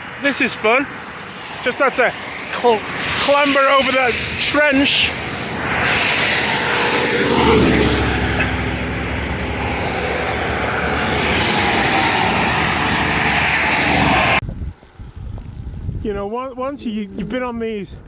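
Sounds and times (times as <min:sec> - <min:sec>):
vehicle passing: 0:00.0 - 0:14.4
highway traffic rushing: 0:00.0 - 0:15.1.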